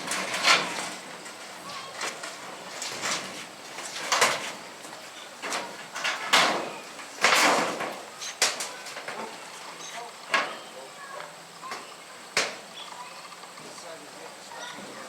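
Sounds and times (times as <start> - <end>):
corrugated steel scraping: 0.0 - 10.6.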